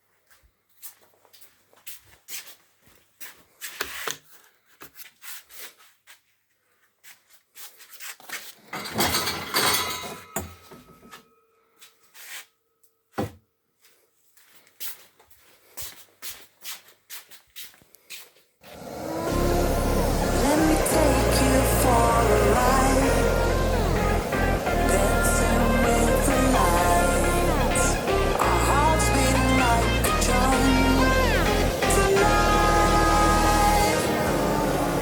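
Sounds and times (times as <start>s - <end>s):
objects rummaged and handled: 7.6s - 12.4s
clatter of objects: 8.4s - 10.8s.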